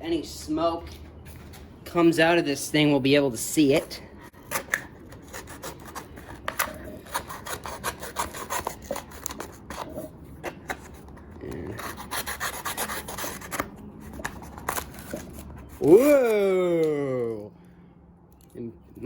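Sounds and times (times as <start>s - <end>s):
scratchy cutting strokes: 4.3s - 10.1s, 10.8s - 15.9s.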